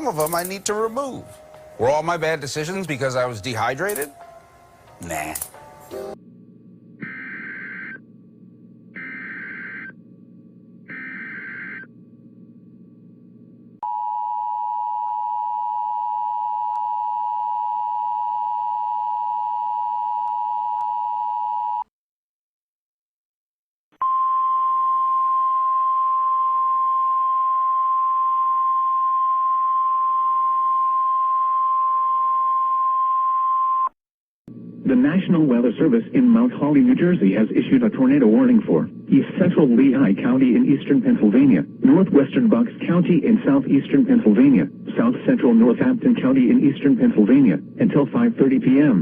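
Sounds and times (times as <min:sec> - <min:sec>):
low hum: 0:06.1 - 0:14.3
steady warning alarm tone: 0:07.0 - 0:08.1, 0:08.9 - 0:10.1, 0:10.8 - 0:12.0
screeching data bursts: 0:09.0 - 0:10.0, 0:10.9 - 0:11.9
two-tone attention signal: 0:09.0 - 0:10.0.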